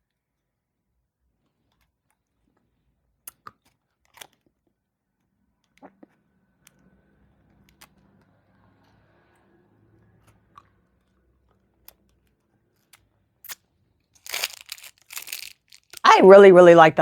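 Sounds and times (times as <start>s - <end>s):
person chewing candy: 14.2s - 16.1s
candy crunching: 14.2s - 16.9s.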